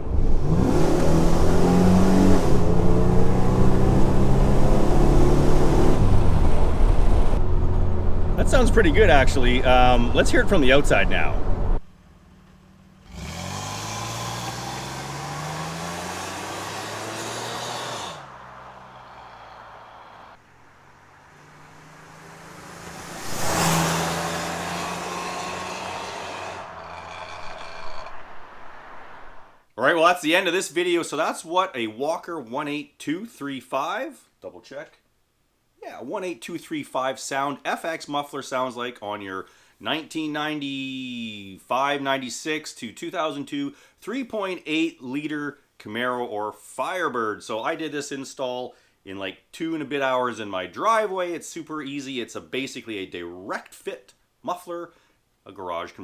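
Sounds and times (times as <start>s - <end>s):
car engine accelerating hard: 0.0s - 10.1s, 10.8s - 29.6s.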